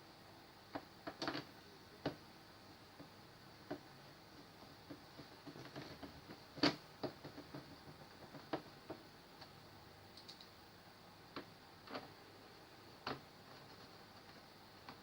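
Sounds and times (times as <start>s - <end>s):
light clicks and taps: 10.2s - 10.6s.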